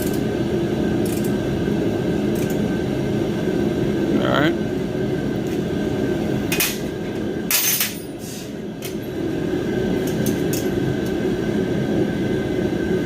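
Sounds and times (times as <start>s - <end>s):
propane heater rushing: 4.7s - 13.0s
metal tools clinking on steel: 7.5s - 8.2s.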